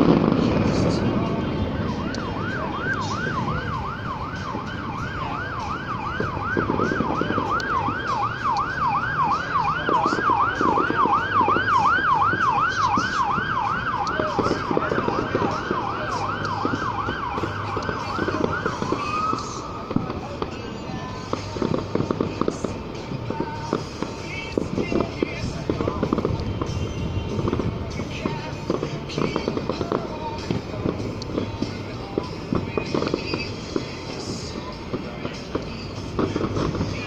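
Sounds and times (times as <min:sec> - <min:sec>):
siren yelping: 0:00.0 - 0:20.4.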